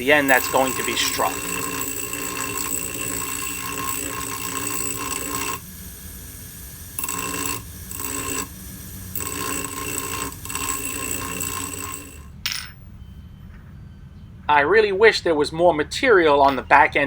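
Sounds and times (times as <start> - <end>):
steel grinding on wheel: 0.0 - 12.7, 16.3 - 17.0
grinding wheel whine: 0.0 - 13.7, 16.3 - 17.0.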